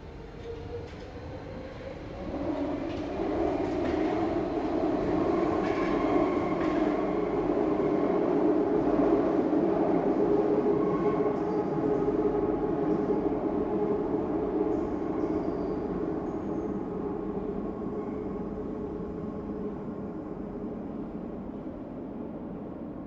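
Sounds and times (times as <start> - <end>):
metro train rolling on rails: 0.0 - 23.0.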